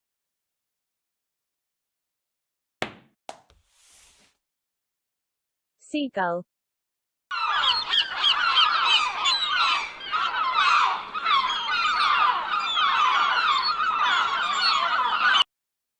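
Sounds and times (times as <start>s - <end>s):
gulls calling: 7.3s - 15.5s.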